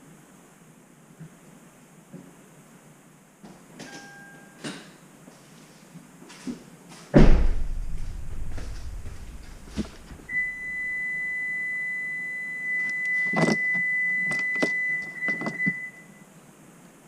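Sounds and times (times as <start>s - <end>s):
high-pitched electronic beep: 10.3s - 16.2s.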